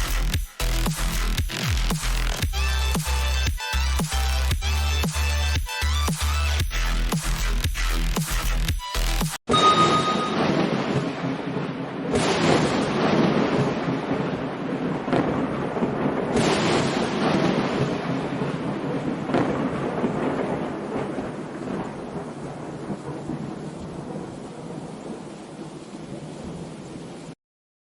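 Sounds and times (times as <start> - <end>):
thunder-like crashes: 9.5 - 23.5
rushing rain-like noise: 10.5 - 27.4.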